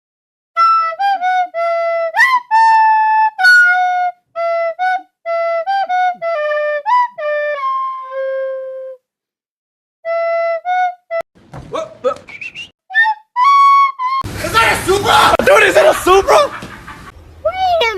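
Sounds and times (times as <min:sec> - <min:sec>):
flute-like woodwind melody: 0:00.6 - 0:09.1, 0:10.0 - 0:11.2, 0:12.3 - 0:14.3.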